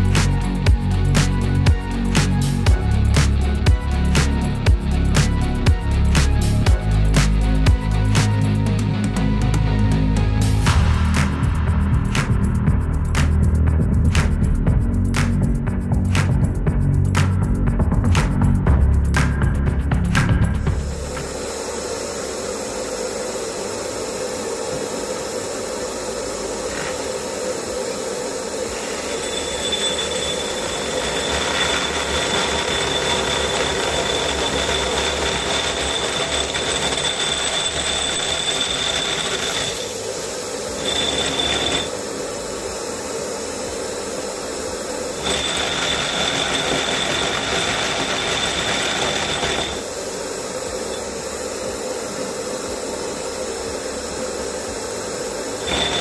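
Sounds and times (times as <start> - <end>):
rotary hammer drill boring into concrete: 28.8 - 40.0, 40.7 - 41.9, 45.2 - 49.9, 55.6 - 56.0.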